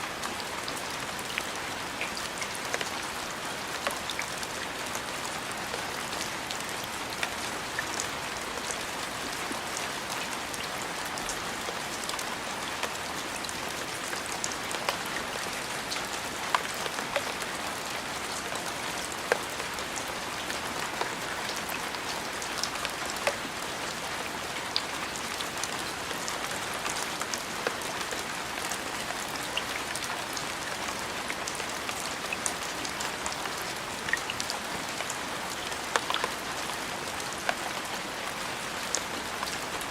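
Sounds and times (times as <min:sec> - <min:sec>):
steady rain hiss: 0:00.0 - 0:39.9
raindrop ticks: 0:35.0 - 0:36.4.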